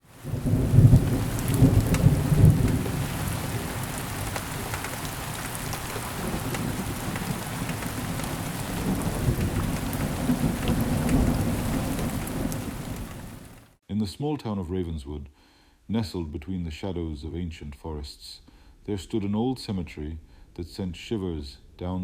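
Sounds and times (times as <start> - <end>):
steady rain: 0.0 - 13.8
raindrop ticks: 0.1 - 13.7
rolling thunder: 0.1 - 13.7.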